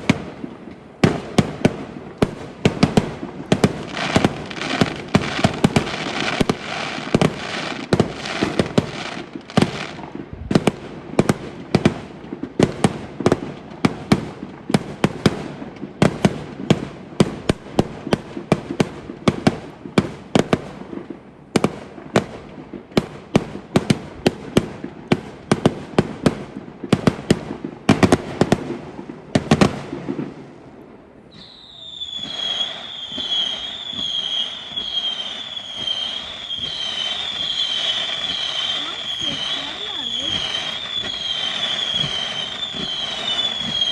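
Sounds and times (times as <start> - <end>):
fireworks bangs: 0.0 - 43.9
high wavering whistle tone: 31.3 - 43.9.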